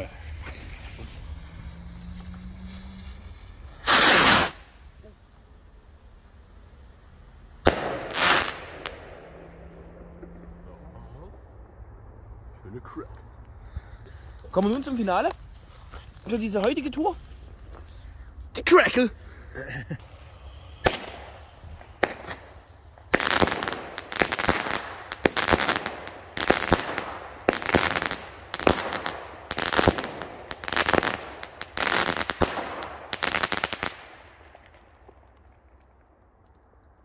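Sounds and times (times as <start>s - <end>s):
firework shots crackling: 0.0s - 5.7s, 7.5s - 9.8s, 20.0s - 36.0s
small firework pops: 7.6s - 9.1s, 20.0s - 37.0s.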